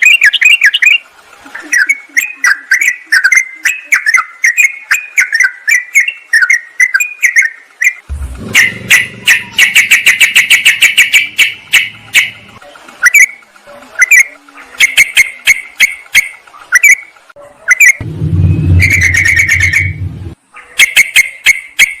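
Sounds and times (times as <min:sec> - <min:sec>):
bird chirping: 0:01.6 - 0:12.4, 0:17.7 - 0:21.8
low rumble: 0:08.1 - 0:09.6, 0:18.0 - 0:20.4.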